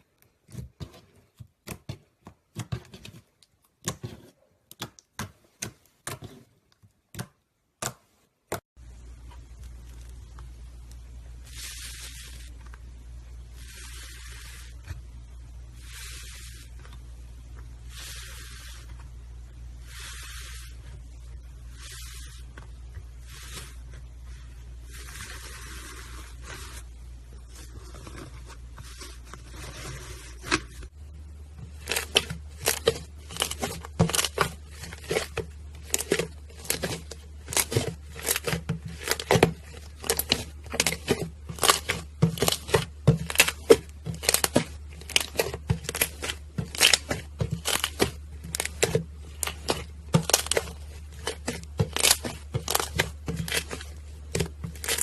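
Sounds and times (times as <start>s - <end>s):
slime popping and crackling: 31.8s - 55.0s.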